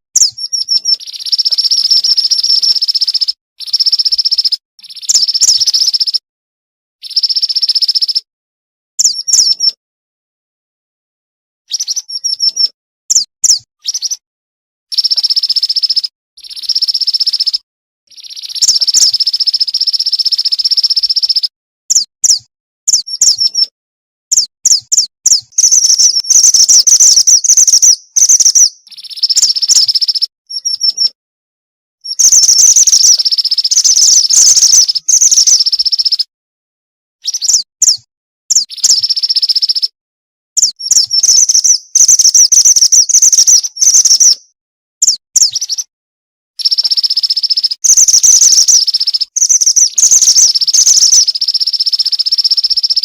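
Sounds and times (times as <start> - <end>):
bird trills and chirps: 0.2 - 6.2, 7.0 - 8.3, 9.0 - 9.8, 11.7 - 14.2, 14.9 - 23.7, 24.3 - 31.2, 32.0 - 36.3, 37.2 - 40.0, 40.6 - 45.9, 46.6 - 53.0.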